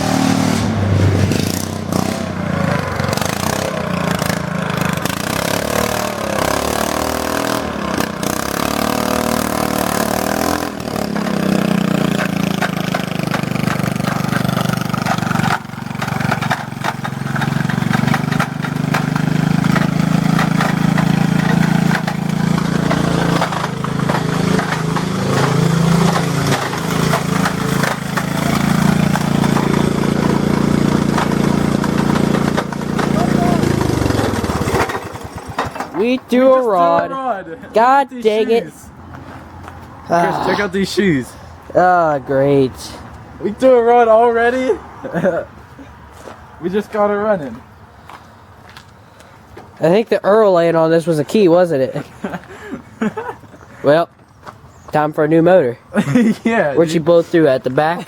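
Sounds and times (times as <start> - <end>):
lawn mower engine running hard: 0.0 - 36.6.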